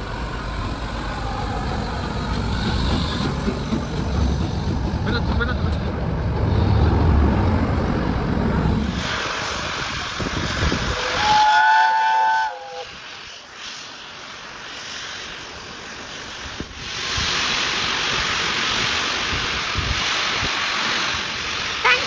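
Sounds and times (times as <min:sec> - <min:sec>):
moving train rushing and hissing: 0:00.0 - 0:22.0
steam locomotive whistle: 0:10.5 - 0:13.0.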